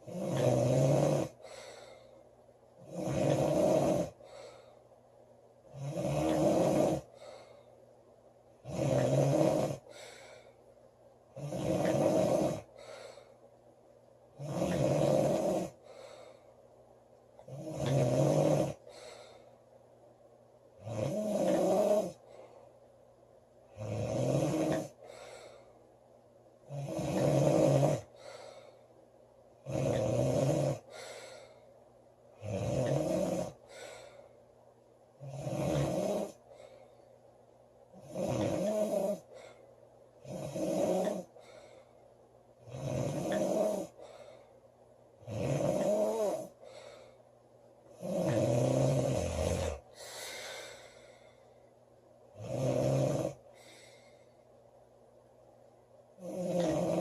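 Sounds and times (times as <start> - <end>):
girl snoring loudly: 0.0 - 1.4, 2.8 - 4.2, 5.7 - 7.1, 8.6 - 9.9, 11.4 - 12.7, 14.4 - 15.8, 17.5 - 18.9, 20.8 - 22.2, 23.8 - 25.0, 26.7 - 28.1, 29.6 - 30.9, 32.4 - 33.6, 35.2 - 36.4, 38.0 - 39.3, 40.2 - 41.3, 42.7 - 44.0, 45.2 - 46.6, 48.0 - 50.8, 52.4 - 53.4, 56.2 - 57.0
faint breath: 1.3 - 2.5, 4.1 - 5.0, 7.0 - 8.0, 9.8 - 10.9, 12.6 - 13.6, 15.7 - 16.9, 18.7 - 19.8, 22.1 - 23.0, 24.9 - 26.0, 28.0 - 29.1, 30.8 - 31.9, 33.5 - 34.6, 36.3 - 37.4, 39.2 - 40.0, 41.2 - 42.2, 43.9 - 44.8, 46.4 - 47.4, 49.7 - 51.9, 53.4 - 54.6.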